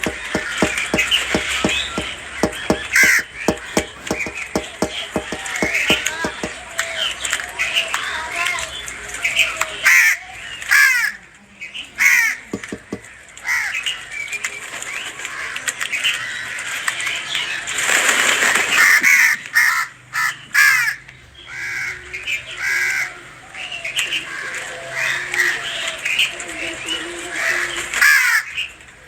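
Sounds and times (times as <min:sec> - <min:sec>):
knocks: 0:00.0 - 0:06.6, 0:12.6 - 0:13.1.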